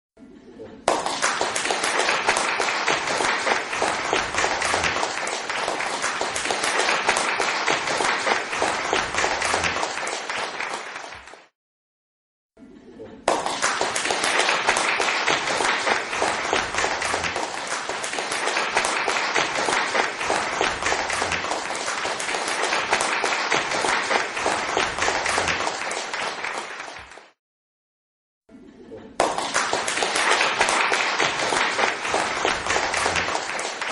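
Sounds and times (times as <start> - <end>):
crowd applause: 0.9 - 11.5, 13.3 - 27.4, 29.2 - 33.9.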